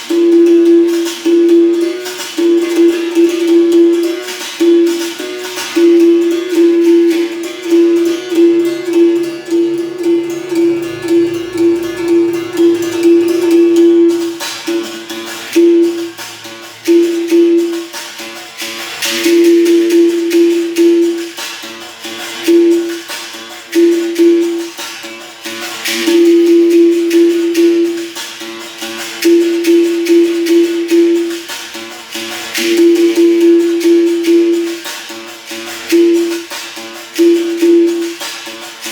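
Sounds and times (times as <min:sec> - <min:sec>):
sharp percussion strikes: 0:00.0 - 0:38.9
berimbau buzzing note: 0:05.8 - 0:17.8
shaken rattle: 0:14.1 - 0:38.9.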